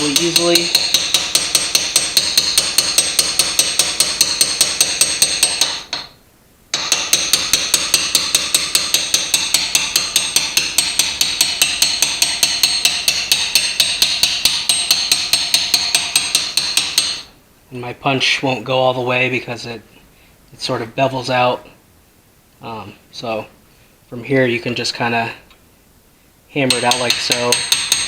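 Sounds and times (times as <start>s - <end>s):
hammer tapping metal punch: 0.0s - 17.3s, 26.6s - 28.0s.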